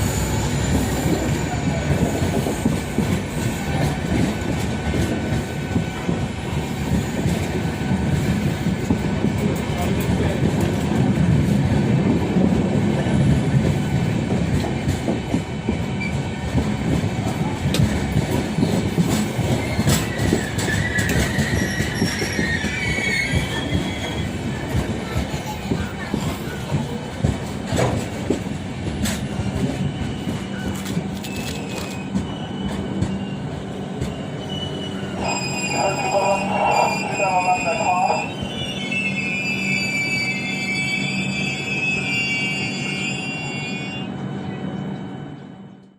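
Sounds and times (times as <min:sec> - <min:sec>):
train wheels clattering on rails: 0:00.0 - 0:35.5
wheel squeal: 0:19.4 - 0:24.4, 0:29.1 - 0:33.4, 0:34.0 - 0:44.1.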